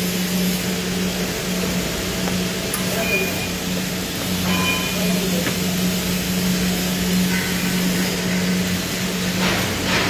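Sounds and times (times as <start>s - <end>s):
low machine hum: 0.0s - 10.0s
welding arc hissing: 0.0s - 10.0s.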